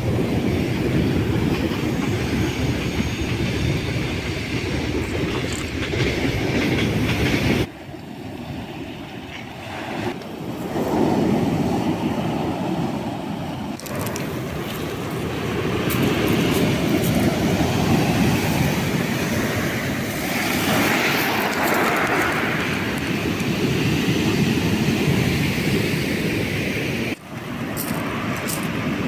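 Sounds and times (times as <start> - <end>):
waves breaking on beach: 9.6 - 29.0.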